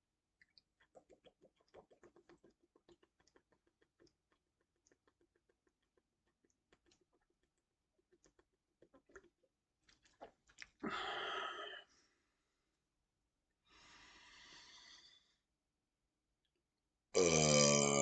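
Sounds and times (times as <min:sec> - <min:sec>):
person breathing heavily: 0:13.7 - 0:15.4
burps: 0:17.2 - 0:18.0.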